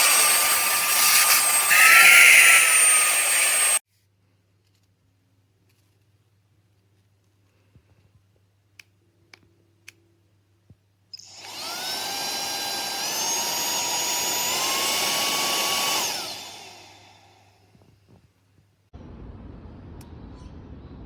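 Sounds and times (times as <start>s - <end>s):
handheld vacuum motor whining: 0.0s - 3.8s, 11.2s - 17.5s.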